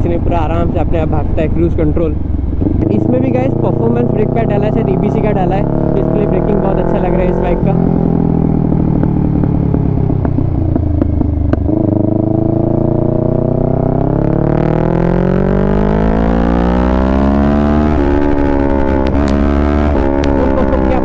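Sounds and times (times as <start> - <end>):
motorcycle engine revving: 0.0 - 21.0
exhaust pops: 18.8 - 21.0.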